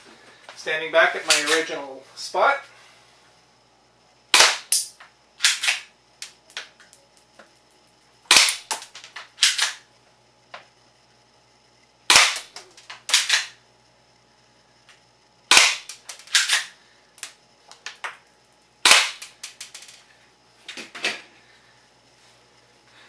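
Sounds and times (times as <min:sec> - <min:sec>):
bb gun shots: 0:04.3 - 0:05.9, 0:08.3 - 0:08.7, 0:12.1 - 0:12.5, 0:15.5 - 0:16.7, 0:18.8 - 0:19.3.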